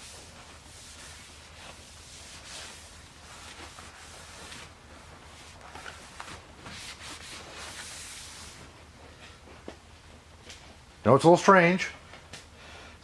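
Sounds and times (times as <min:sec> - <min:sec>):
rag wiping metal table: 0:00.0 - 0:08.7.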